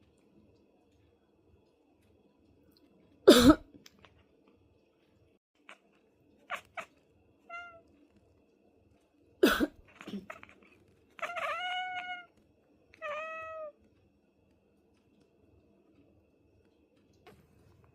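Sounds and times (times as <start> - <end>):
person coughing: 3.3 - 3.7, 9.4 - 10.4
cat meowing: 6.4 - 7.9, 10.0 - 12.4, 13.0 - 13.8.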